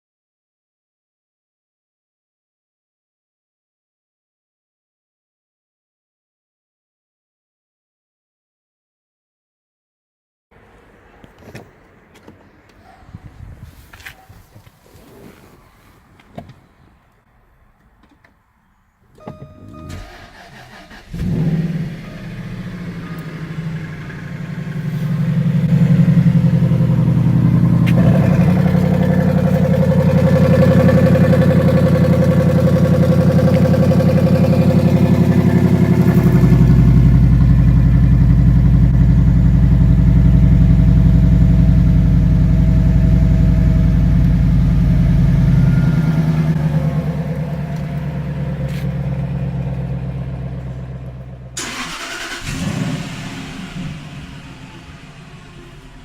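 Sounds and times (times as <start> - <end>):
car engine starting: 19.2 - 56.0
car engine idling: 19.5 - 56.0
deep low drone: 21.2 - 51.3.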